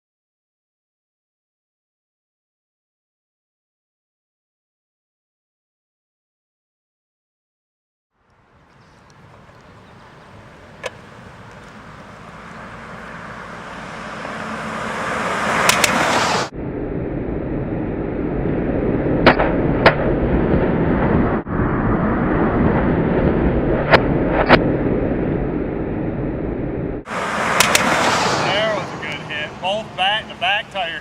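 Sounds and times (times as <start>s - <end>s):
tyre and road noise: 8.2s - 16.5s, 18.2s - 31.0s.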